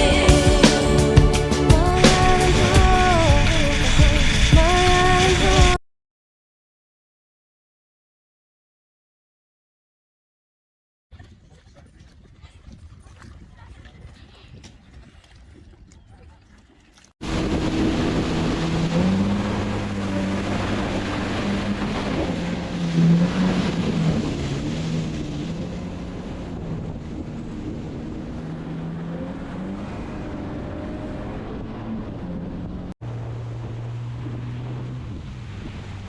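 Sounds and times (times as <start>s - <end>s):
jet ski engine running: 0.0s - 5.8s, 17.2s - 36.0s
water rushing: 0.0s - 5.8s, 15.1s - 36.0s
wind noise on microphone: 0.0s - 5.8s, 11.1s - 36.0s.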